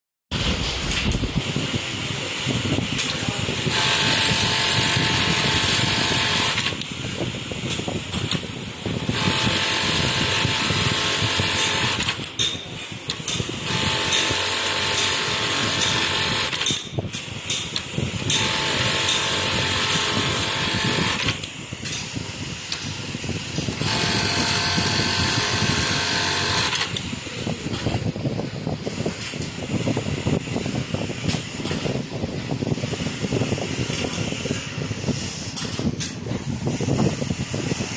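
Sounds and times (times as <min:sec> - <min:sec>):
rough mechanical noise: 0:00.4 - 0:37.9
sewing machine running: 0:03.0 - 0:06.8, 0:08.0 - 0:16.8, 0:17.4 - 0:21.5, 0:22.2 - 0:28.2.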